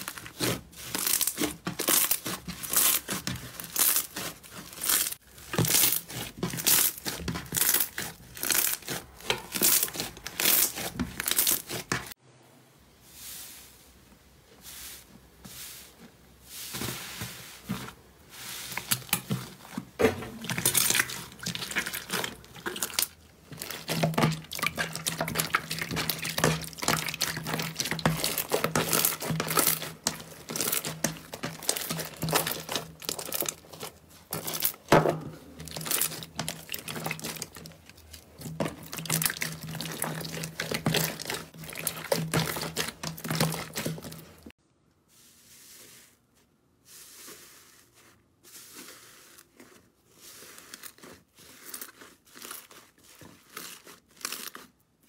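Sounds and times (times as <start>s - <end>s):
slime crackling and popping: 0.0s - 12.1s, 20.6s - 44.4s.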